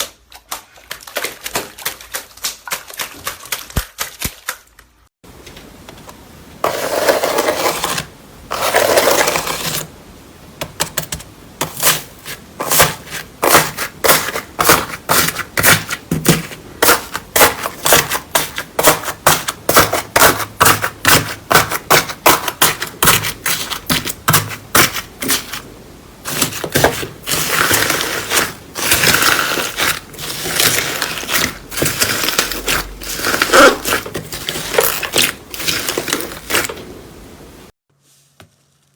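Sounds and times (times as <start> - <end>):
wet slime squelching: 0.0 - 5.0, 11.6 - 36.9.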